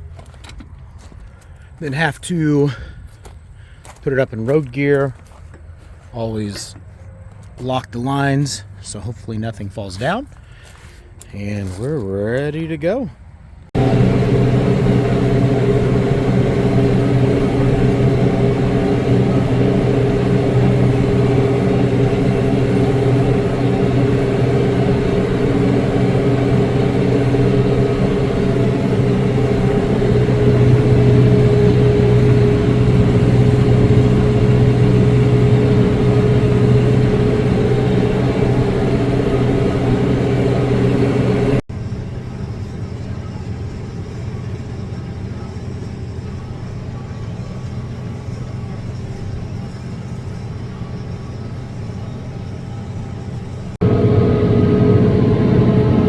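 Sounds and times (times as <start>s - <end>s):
tractor engine running: 13.7s - 56.0s.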